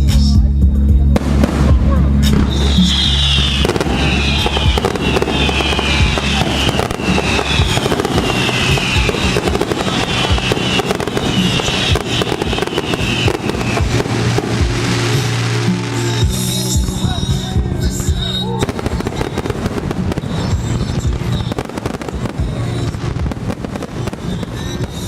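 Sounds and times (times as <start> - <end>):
fireworks bangs and crackles: 1.0 - 25.0
live band music: 1.2 - 25.0
high falling whistle: 2.4 - 14.4.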